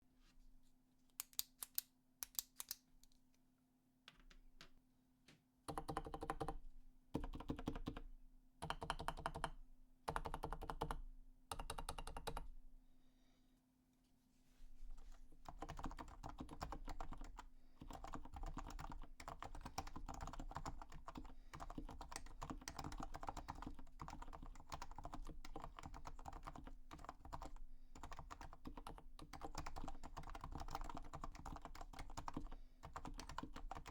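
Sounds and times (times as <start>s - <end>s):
keyboard typing: 5.7s - 6.6s, 7.2s - 8.0s, 8.6s - 12.5s, 15.4s - 33.9s.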